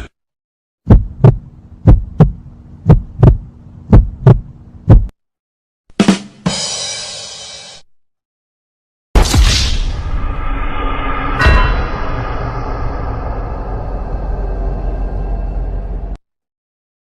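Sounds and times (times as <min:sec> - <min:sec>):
steady low hum: 0:00.9 - 0:05.1, 0:10.2 - 0:16.2
heartbeat thumps: 0:00.9 - 0:05.2
short hit: 0:09.2 - 0:14.7
noisy whoosh: 0:09.6 - 0:16.2.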